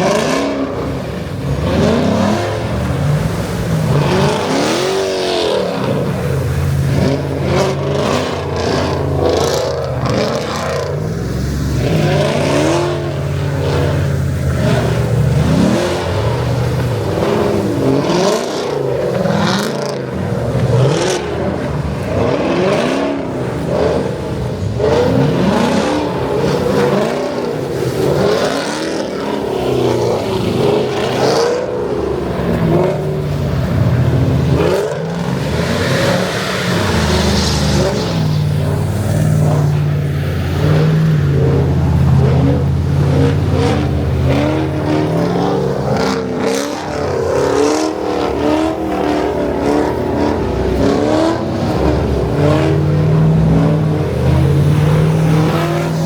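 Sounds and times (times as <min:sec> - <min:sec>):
car engine revving: 0:00.0 - 0:56.0.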